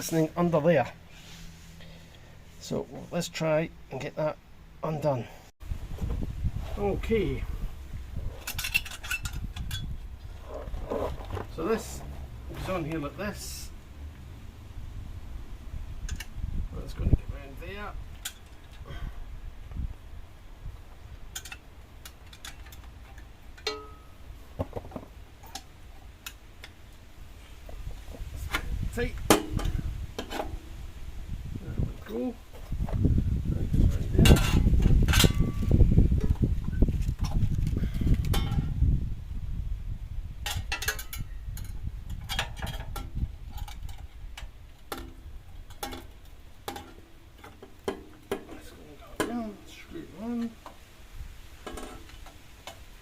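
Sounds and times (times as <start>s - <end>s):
short ringing metal clink: 23.6s - 24.2s.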